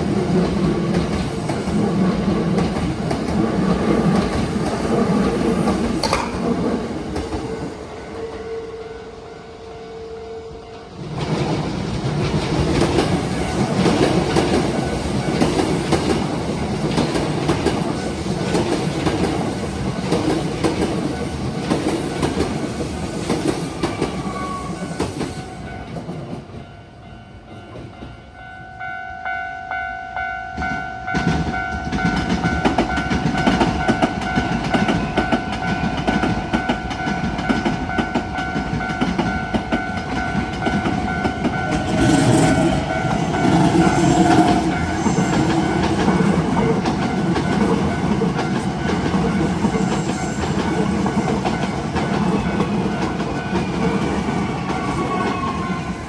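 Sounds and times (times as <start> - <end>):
train wheels clattering over rail joints: 0.0 - 7.5, 11.2 - 26.4, 31.2 - 55.7
level crossing warning bell: 25.6 - 55.3.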